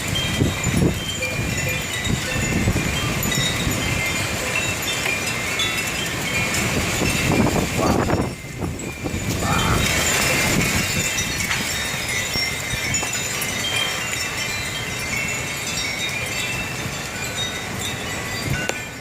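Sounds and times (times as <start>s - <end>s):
rushing storm wind: 0.0s - 19.0s
wind chimes ringing: 0.0s - 19.0s.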